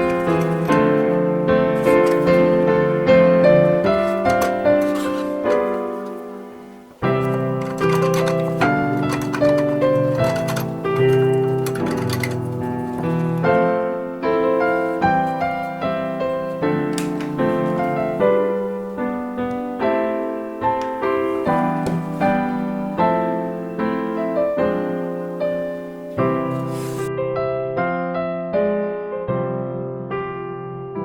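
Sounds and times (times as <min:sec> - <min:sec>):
gentle piano melody: 0:00.0 - 0:31.0.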